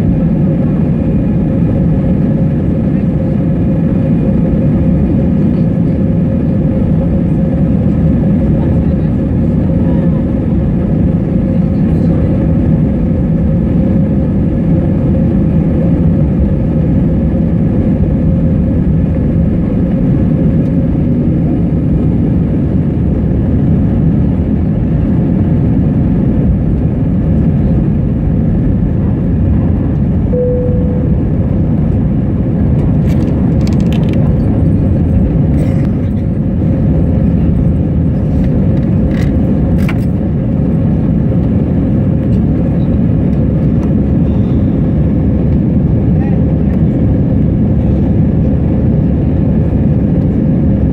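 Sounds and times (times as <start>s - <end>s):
aeroplane engines roaring: 0.0s - 50.9s.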